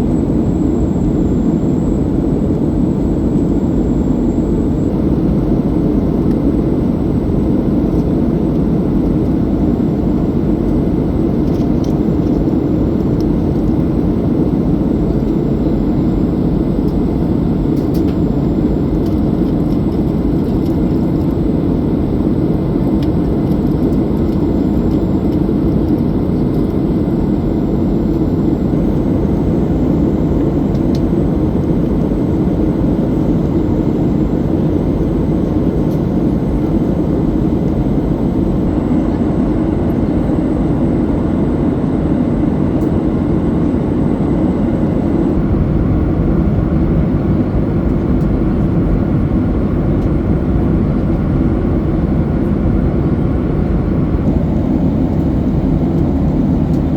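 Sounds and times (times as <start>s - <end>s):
jet cabin engine rush: 0.0s - 56.9s.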